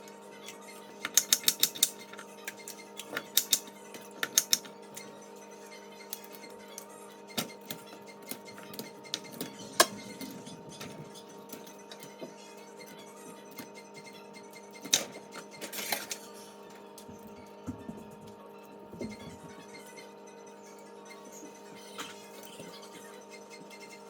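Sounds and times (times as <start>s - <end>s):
steady hum: 0.0s - 24.0s
kitchen utensils clicking: 1.0s - 4.7s.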